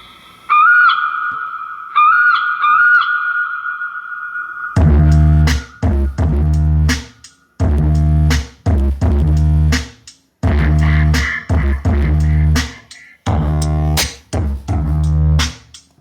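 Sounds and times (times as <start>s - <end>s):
bass-heavy electronic dance music: 4.8s - 15.8s.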